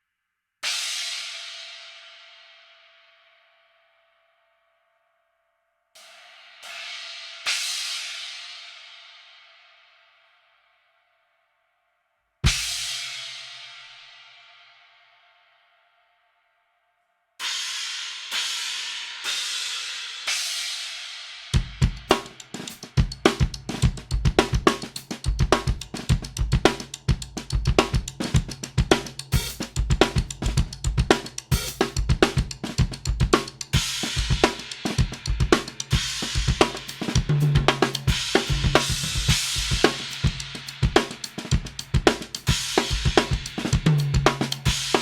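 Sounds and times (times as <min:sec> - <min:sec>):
drum kit groove: 0:19.1 - 0:45.0.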